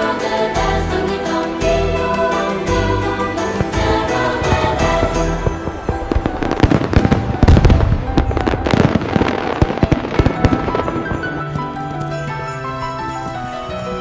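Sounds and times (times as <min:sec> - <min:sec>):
music: 0:00.0 - 0:14.0
fireworks banging and crackling: 0:03.0 - 0:14.0.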